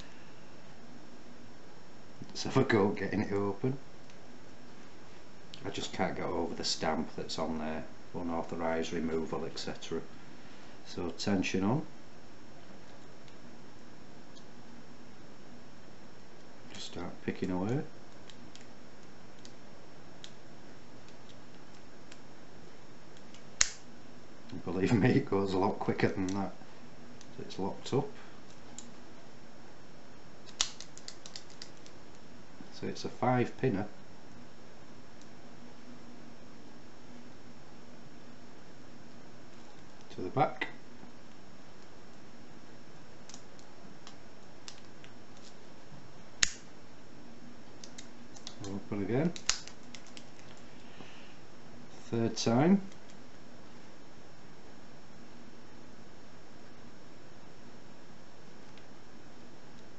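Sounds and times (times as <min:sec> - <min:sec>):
steady background hiss: 0:00.0 - 0:59.9
padlock shackle clicking open: 0:30.5 - 0:31.9, 0:49.4 - 0:50.6.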